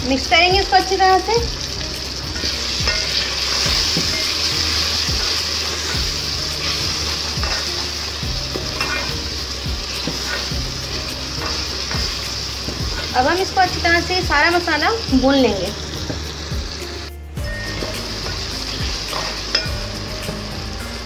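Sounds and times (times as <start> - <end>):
masala sizzling in oil: 0.0 - 21.0
spoon scraping against pan: 2.4 - 7.9, 8.5 - 9.3, 9.9 - 13.2, 17.7 - 19.7.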